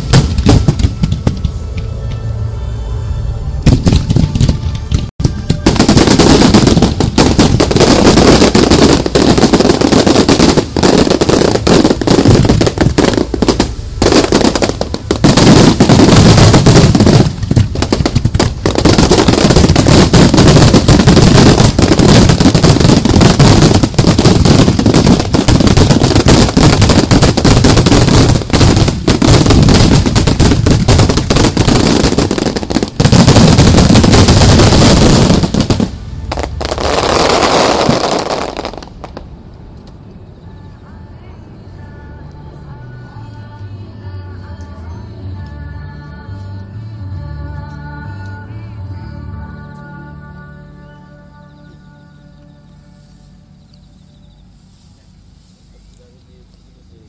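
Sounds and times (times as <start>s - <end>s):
fireworks mortars firing: 0.0s - 1.9s, 3.6s - 39.3s.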